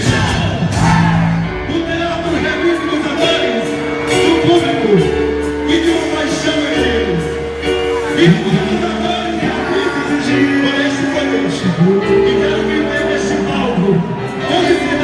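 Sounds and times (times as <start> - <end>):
person singing over a band: 0.0 - 1.6.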